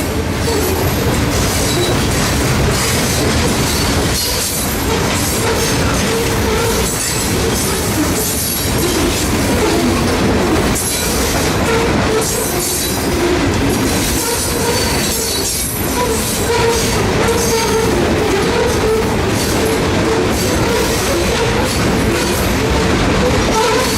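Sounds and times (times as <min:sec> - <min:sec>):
freight train wheels rumbling: 0:00.0 - 0:23.9
wheel squeal: 0:01.6 - 0:02.1, 0:14.1 - 0:19.8.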